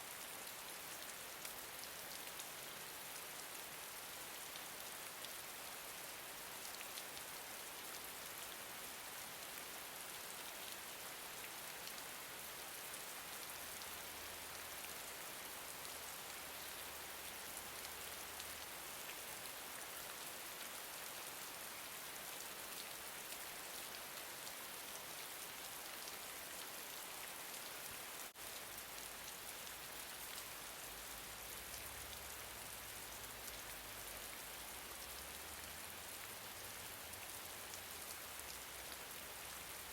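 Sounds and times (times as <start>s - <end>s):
gentle rain pattering: 0.0s - 39.9s.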